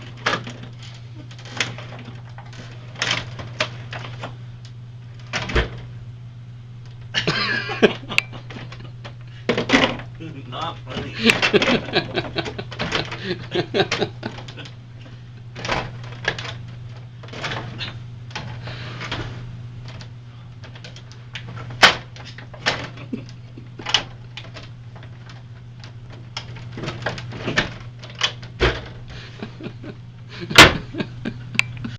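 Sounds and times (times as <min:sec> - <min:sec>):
fridge hum: 0:00.0 - 0:31.9
plastic bottles clunking in fridge: 0:07.2 - 0:10.2, 0:10.9 - 0:20.0, 0:20.6 - 0:31.1.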